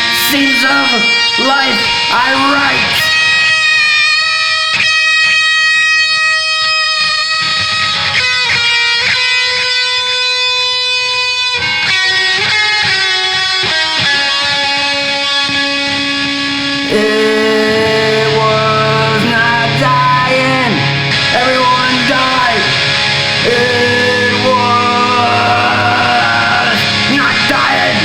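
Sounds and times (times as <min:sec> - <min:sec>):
electric guitar held notes: 0:00.0 - 0:28.0.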